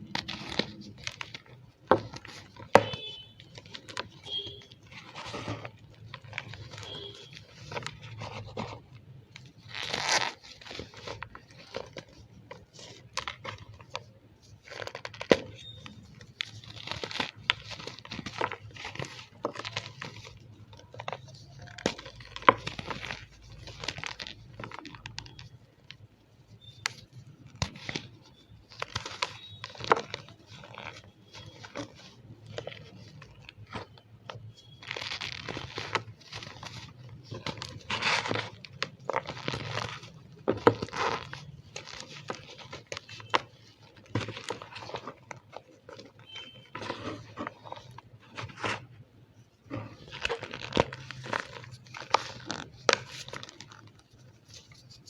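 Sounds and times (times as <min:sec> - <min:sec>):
chalk crunching and squeaking: 0:26.6 - 0:48.9.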